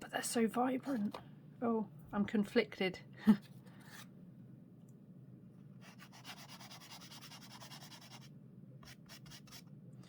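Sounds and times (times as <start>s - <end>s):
pastel stick rubbing on paper: 5.8s - 9.7s.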